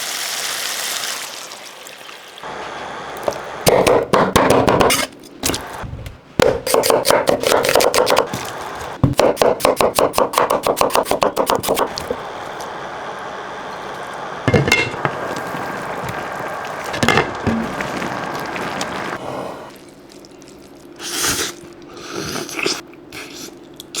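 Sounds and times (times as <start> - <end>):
pot hissing on stove: 11.6 - 19.7
utensil knocks: 14.5 - 15.4.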